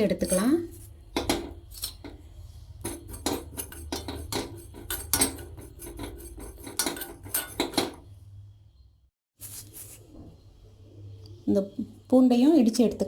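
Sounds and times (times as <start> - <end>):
metal spoon scraping metal pan: 0.0 - 8.0.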